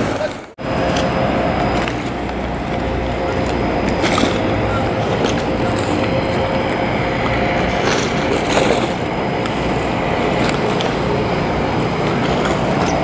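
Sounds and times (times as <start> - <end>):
rumbling hiss of street noise: 0.0 - 13.0.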